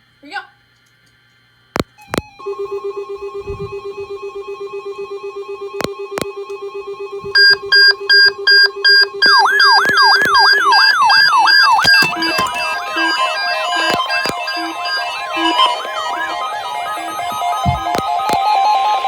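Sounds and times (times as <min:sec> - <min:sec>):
sharp clicks: 0:00.8 - 0:02.4, 0:07.4 - 0:19.0
loud on-off beeping: 0:02.0 - 0:19.0
siren-like downward warble: 0:02.0 - 0:19.0
steady higher tones: 0:02.3 - 0:19.0
fast-pulsing low beep: 0:02.5 - 0:19.0.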